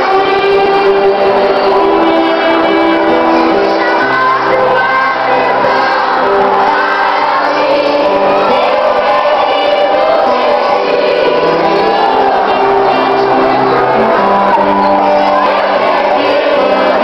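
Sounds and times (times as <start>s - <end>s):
song with voices singing: 0.0s - 17.0s.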